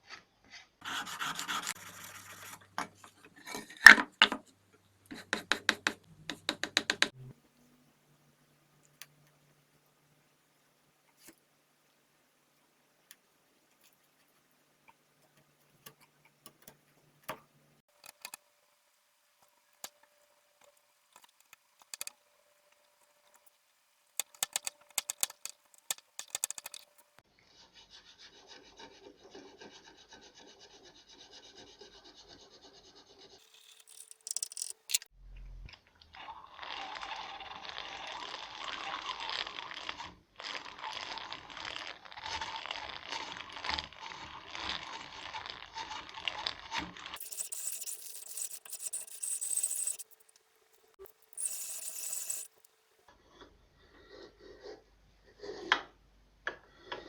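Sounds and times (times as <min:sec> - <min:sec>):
hand tool scraping wood: 0:21.2 - 0:22.1, 0:24.2 - 0:27.2, 0:33.4 - 0:35.1, 0:42.2 - 0:50.4.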